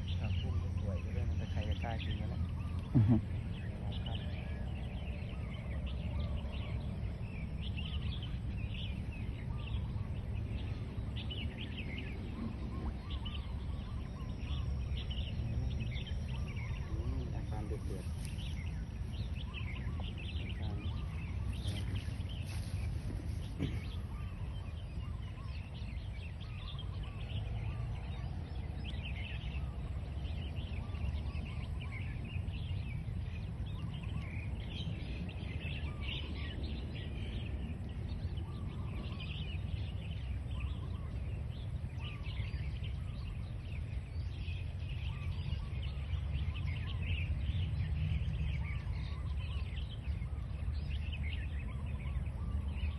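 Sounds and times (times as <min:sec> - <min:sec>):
birds chirping: 0:00.0 - 0:52.9
low outdoor rumble: 0:00.0 - 0:52.9.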